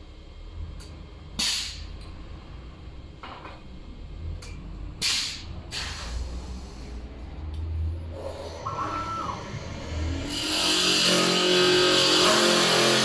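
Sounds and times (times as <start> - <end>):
short sharp hisses: 1.4 - 1.9, 5.0 - 7.0
wood lathe rumbling: 8.6 - 13.0.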